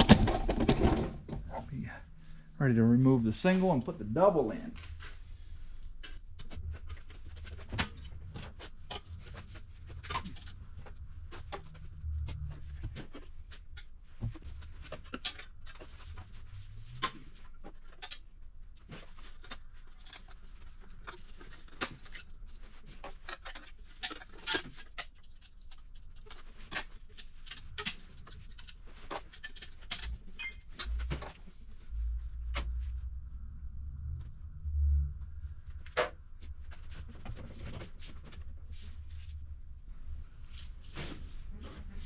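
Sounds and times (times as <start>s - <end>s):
faint low rumble: 0.0s - 14.7s, 30.1s - 42.0s.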